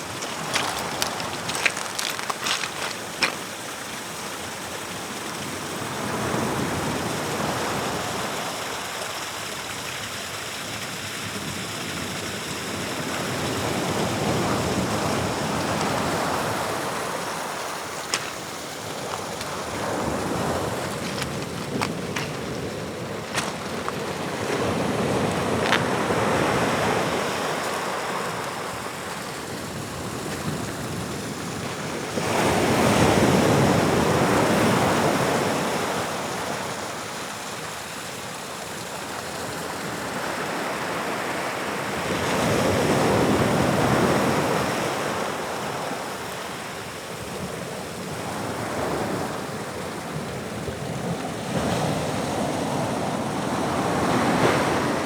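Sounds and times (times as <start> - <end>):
waves breaking on rocks: 0.0 - 4.5, 12.7 - 36.8.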